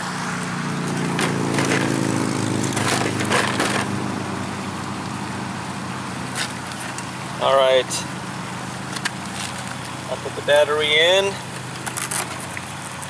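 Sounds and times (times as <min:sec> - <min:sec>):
low mechanical hum: 0:00.0 - 0:13.0
plastic hull clicking and crackling: 0:02.7 - 0:03.9, 0:11.5 - 0:13.0.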